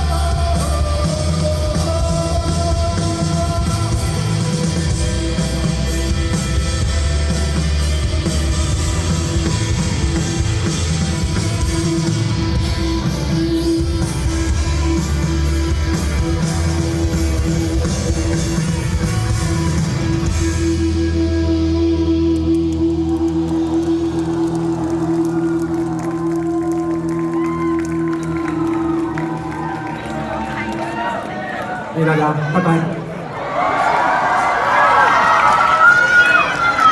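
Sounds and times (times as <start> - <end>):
drum kit: 0.0 - 21.2
rock band playing: 0.0 - 31.2
electric guitars: 0.0 - 31.4.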